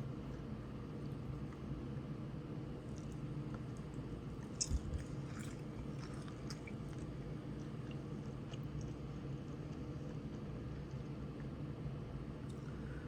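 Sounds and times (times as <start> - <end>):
steady low hum: 0.0 - 13.0
chewing crunchy food: 2.7 - 11.6.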